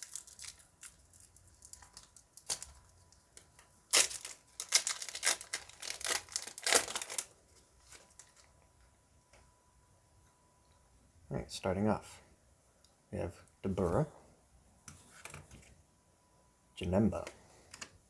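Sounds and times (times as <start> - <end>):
foil wrapper tearing and crinkling: 0.0 - 8.5.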